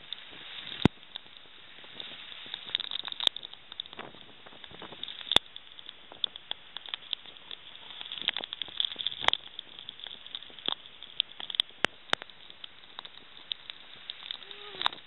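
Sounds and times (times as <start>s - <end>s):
rain hissing: 0.0s - 15.0s
raindrops tapping close by: 0.0s - 15.0s.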